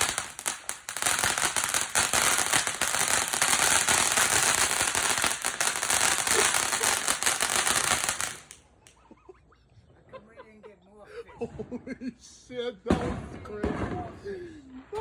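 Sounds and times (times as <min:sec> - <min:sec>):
fireworks crackling: 0:00.0 - 0:09.0, 0:12.9 - 0:15.0.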